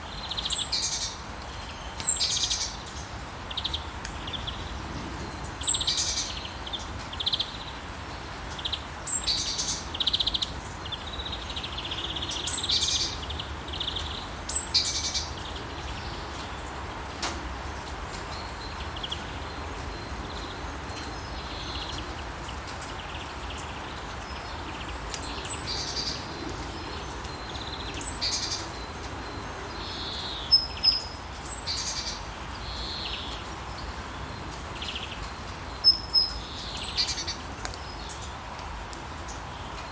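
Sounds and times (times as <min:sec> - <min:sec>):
rain falling: 0:00.1 - 0:39.9
songbirds chirping and singing: 0:18.1 - 0:38.4.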